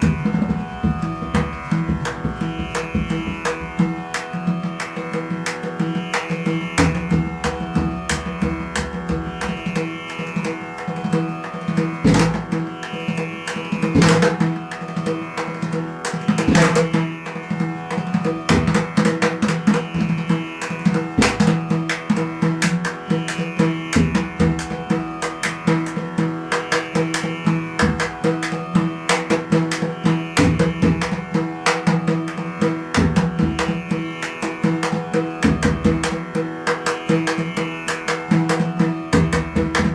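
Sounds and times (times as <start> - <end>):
steady drone: 0.0 - 36.8.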